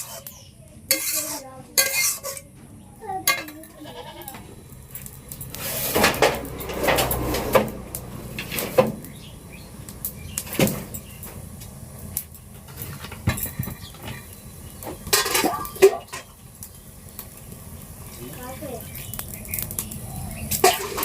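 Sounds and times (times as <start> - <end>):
pots and pans clattering: 0.0 - 2.6, 3.2 - 3.8, 5.4 - 7.8, 12.6 - 16.4, 20.5 - 21.0.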